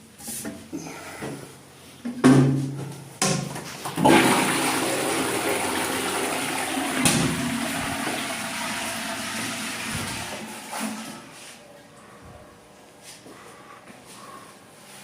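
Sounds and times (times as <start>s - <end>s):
toilet flushing: 3.7s - 11.6s.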